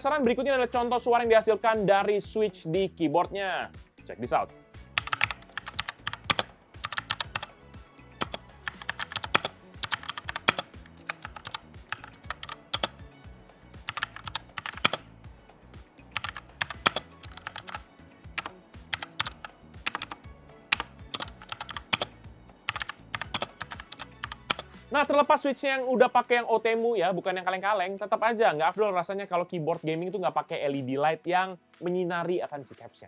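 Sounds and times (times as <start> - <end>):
mechanical keyboard typing: 5.0 - 7.5, 8.2 - 13.0, 13.8 - 15.1, 16.2 - 17.8, 18.4 - 24.8.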